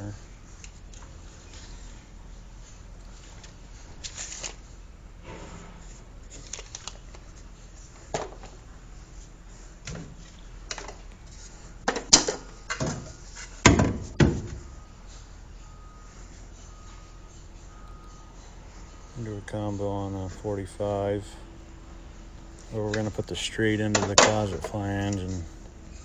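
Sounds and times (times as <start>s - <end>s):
tools being handled: 9.8s - 14.6s, 22.6s - 25.5s.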